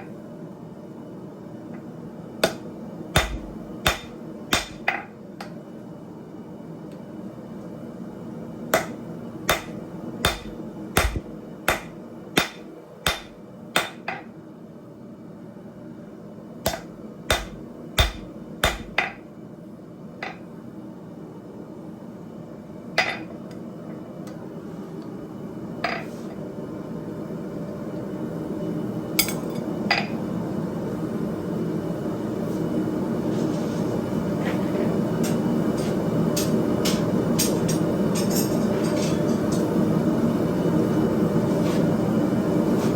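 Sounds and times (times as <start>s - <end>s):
hammer striking steel on anvil: 2.4s - 5.0s, 8.8s - 14.2s, 16.7s - 19.2s, 29.2s - 29.6s.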